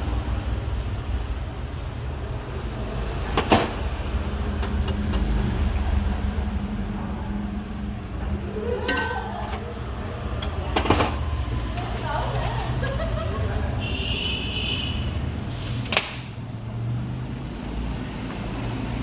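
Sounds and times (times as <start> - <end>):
street traffic rumbling: 0.0 - 19.0
sharp knocks: 3.3 - 3.9.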